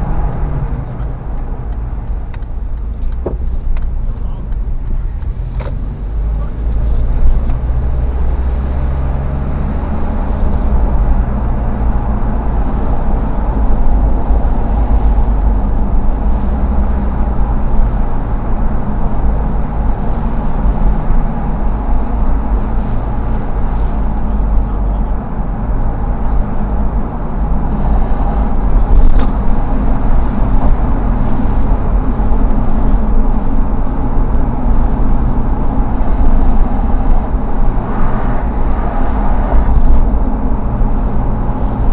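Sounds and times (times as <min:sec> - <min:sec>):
road and engine noise: 0:00.0 - 0:41.9
high-pitched chirping squeal: 0:30.0 - 0:36.0.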